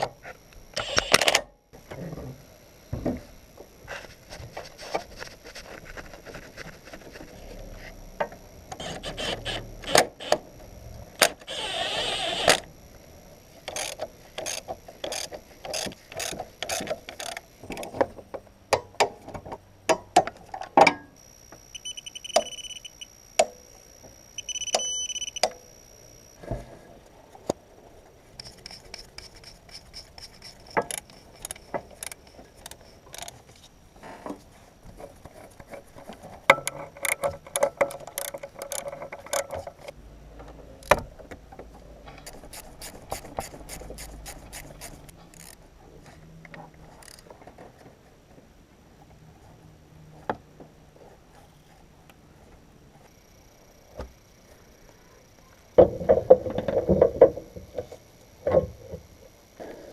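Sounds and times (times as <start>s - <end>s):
tools clicking and knocking: 13.7s - 18.1s, 28.4s - 33.4s, 36.5s - 39.9s
short high beeps: 21.7s - 26.4s.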